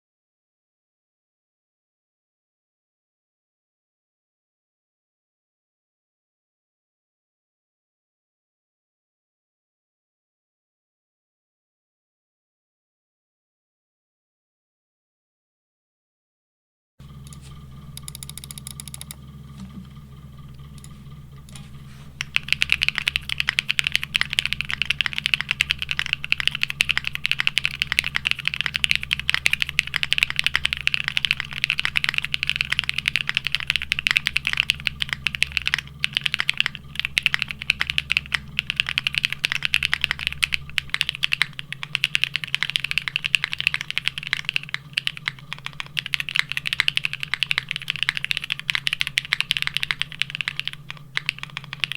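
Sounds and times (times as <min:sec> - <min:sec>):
low steady hum: 0:17.0 - 0:51.9
mechanical keyboard typing: 0:17.2 - 0:19.8, 0:20.5 - 0:51.9.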